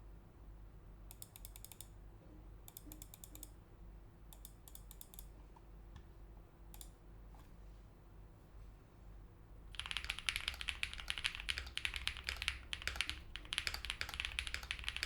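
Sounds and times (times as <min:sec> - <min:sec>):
mechanical keyboard typing: 0:09.7 - 0:15.0.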